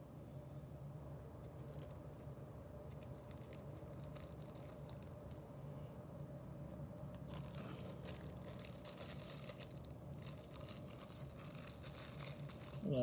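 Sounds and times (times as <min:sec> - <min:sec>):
steady low hum: 0:00.0 - 0:13.0
packaging crinkling and rustling: 0:01.4 - 0:02.3, 0:02.9 - 0:05.4, 0:07.2 - 0:13.0.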